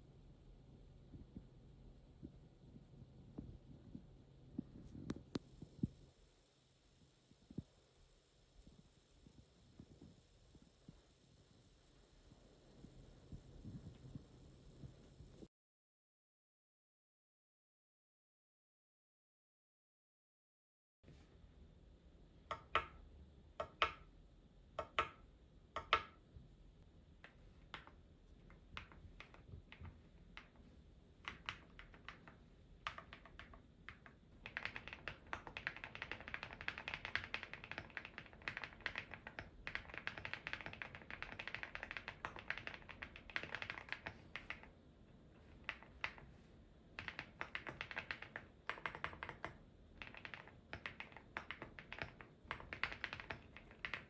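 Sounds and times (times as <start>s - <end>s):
mechanical keyboard typing: 22.5s - 23.0s, 23.6s - 24.0s, 24.8s - 25.2s, 25.8s - 26.2s, 27.2s - 44.8s, 45.4s - 54.0s.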